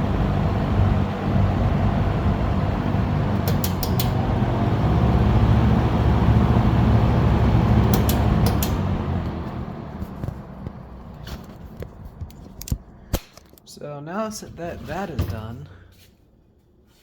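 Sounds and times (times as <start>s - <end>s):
box fan motor hum and air rush: 0.0s - 13.3s.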